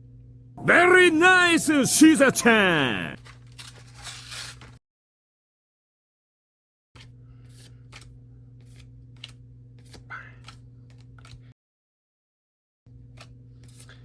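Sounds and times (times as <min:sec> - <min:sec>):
low electrical hum: 0:07.0 - 0:11.5.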